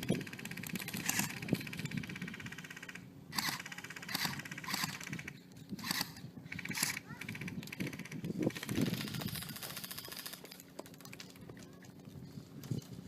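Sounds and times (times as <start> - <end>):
airsoft guns firing: 2.1 - 10.4.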